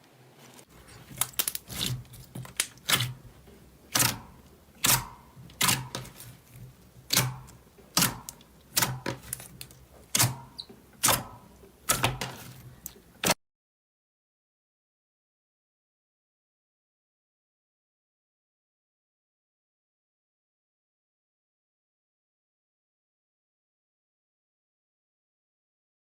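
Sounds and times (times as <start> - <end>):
slime popping and clicking: 0.9 - 3.3, 3.9 - 13.4.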